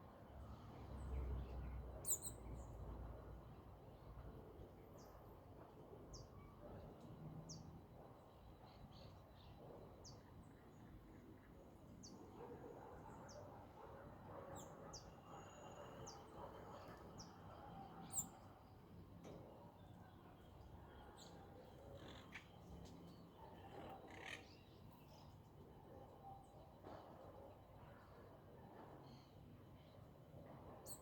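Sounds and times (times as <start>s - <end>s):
faint bird chirping: 1.0s - 2.8s.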